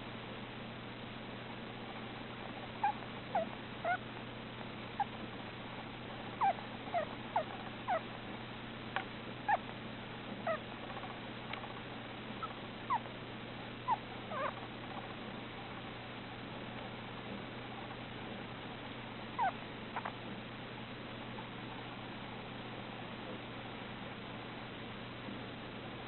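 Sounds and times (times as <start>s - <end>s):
hamster squeaking softly: 2.8s - 4.1s, 10.4s - 11.1s, 13.9s - 14.6s, 19.4s - 20.2s.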